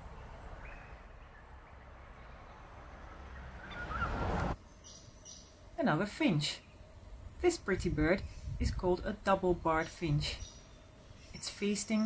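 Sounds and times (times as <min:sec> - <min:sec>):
faint bird chirp: 0:09.7 - 0:12.0.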